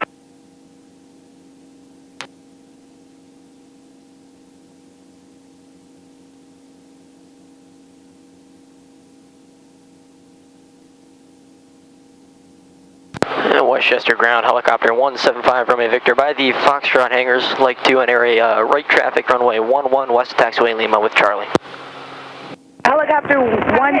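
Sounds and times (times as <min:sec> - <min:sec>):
faint electrical hum: 0:00.0 - 0:24.0
radio hiss: 0:13.1 - 0:24.0
steady radio tones: 0:13.1 - 0:24.0.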